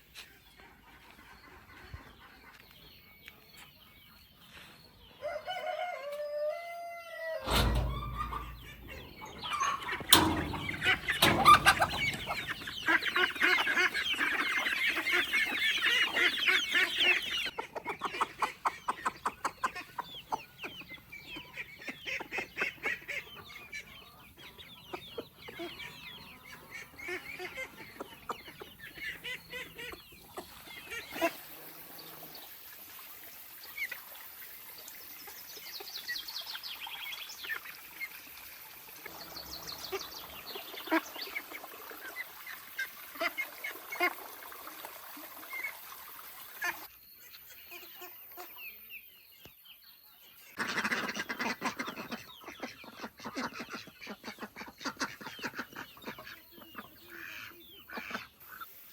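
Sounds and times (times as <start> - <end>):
chickens clucking and cackling: 0.0 - 58.9
rooster crowing: 5.2 - 7.5.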